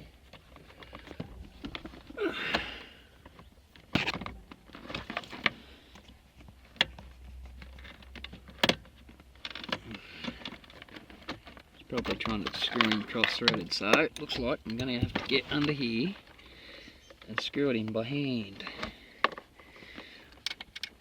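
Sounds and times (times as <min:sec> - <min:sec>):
bolt scraping and rattling: 0:03.2 - 0:16.4.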